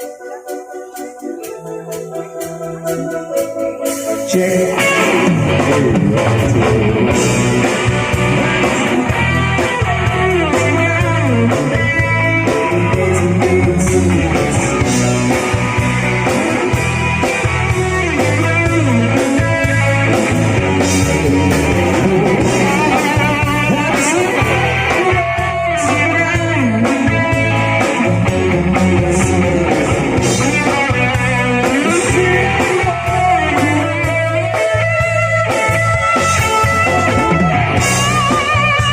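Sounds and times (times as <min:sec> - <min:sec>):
rock music with guitar: 0:00.0 - 0:38.9.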